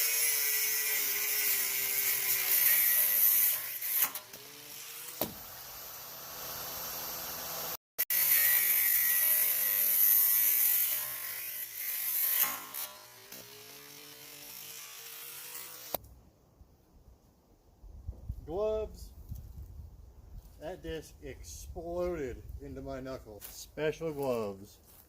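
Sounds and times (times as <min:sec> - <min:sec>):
angle grinder cutting metal: 0:00.0 - 0:16.0.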